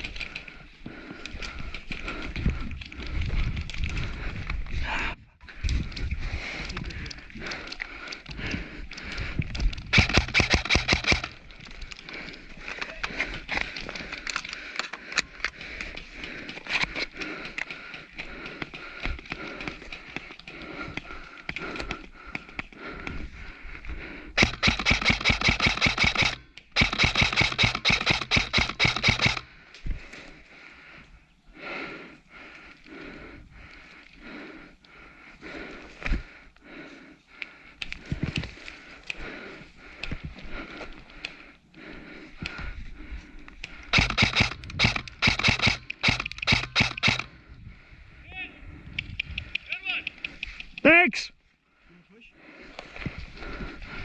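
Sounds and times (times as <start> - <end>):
scattered clicks: 0.0 - 4.6, 5.6 - 23.2, 24.4 - 29.8, 43.4 - 47.3, 48.8 - 51.1
person breathing heavily: 0.0 - 50.9, 51.5 - 54.0
airsoft rifle full-auto burst: 9.9 - 11.4, 24.4 - 29.4, 43.9 - 47.3.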